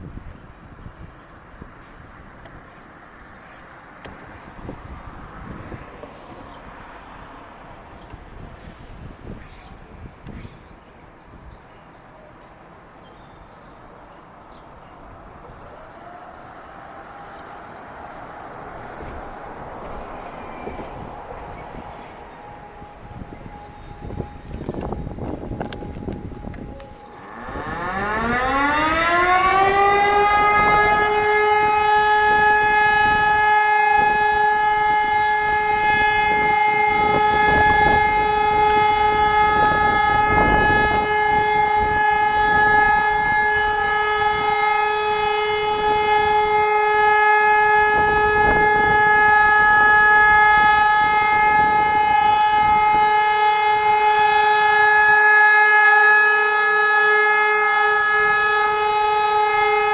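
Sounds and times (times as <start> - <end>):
electromechanical siren wailing: 15.0 - 59.9.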